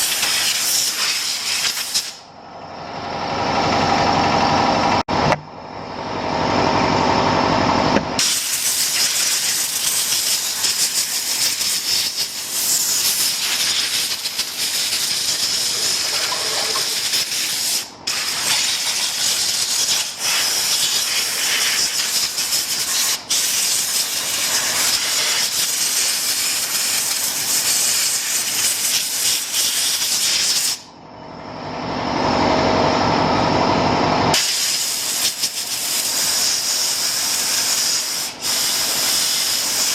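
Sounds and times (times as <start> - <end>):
compressed air blow gun hissing: 34.4 - 39.9.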